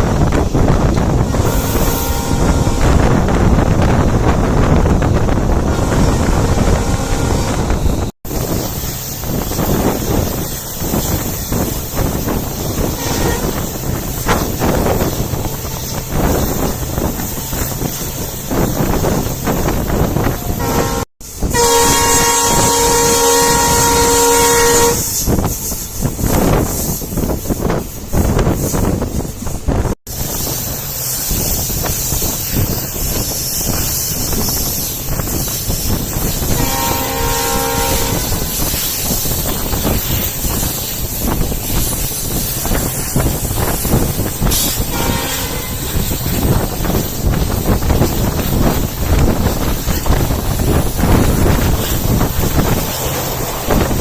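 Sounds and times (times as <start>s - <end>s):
train wheels rushing on rails: 0.0s - 54.0s
wind on microphone: 0.0s - 54.0s
locomotive horn blast: 1.3s - 3.9s, 5.6s - 8.1s, 12.8s - 13.8s, 20.2s - 25.3s, 36.2s - 38.8s, 44.6s - 46.6s.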